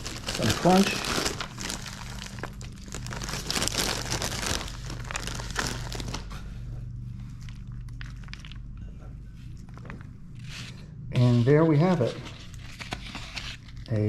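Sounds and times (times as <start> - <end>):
plastic wrapper crinkling: 0.0 - 6.4, 7.3 - 8.8, 9.5 - 10.2
steady low hum: 0.0 - 14.0.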